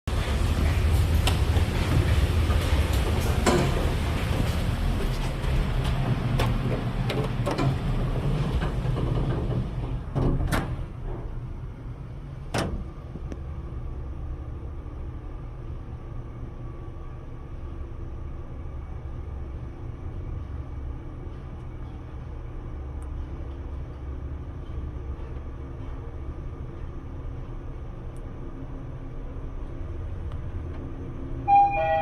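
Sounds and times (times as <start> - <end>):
low steady elevator hum: 0.0 - 32.0
elevator sliding door clicks: 0.1 - 11.5, 12.4 - 13.5.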